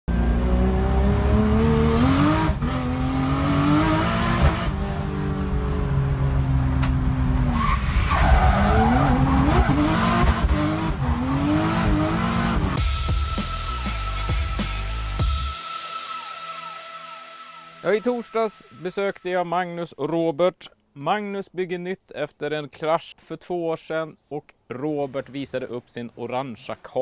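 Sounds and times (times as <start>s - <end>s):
racing car engine revving: 0.1s - 12.8s
tyre squeal: 7.5s - 10.0s.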